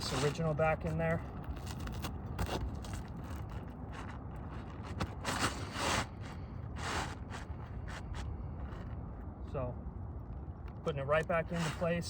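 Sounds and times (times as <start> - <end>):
roofing shingle scraping: 0.0 - 8.9.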